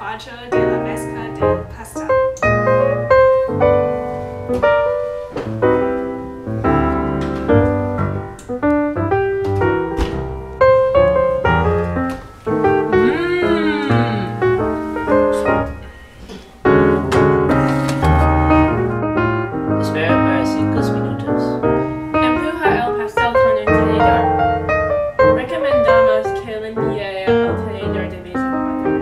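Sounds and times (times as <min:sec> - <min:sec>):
piano music: 0:00.0 - 0:29.0
gliding pitch sound: 0:12.9 - 0:15.6.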